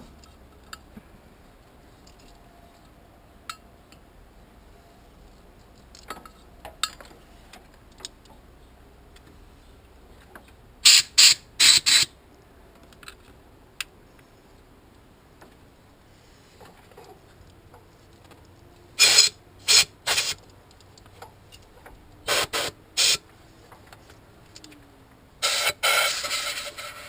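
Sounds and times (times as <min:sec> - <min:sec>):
clicks and knocks of tools: 0:05.6 - 0:08.4, 0:23.6 - 0:24.9
air blow gun blasts: 0:19.0 - 0:20.4, 0:22.2 - 0:23.2, 0:25.4 - 0:27.0.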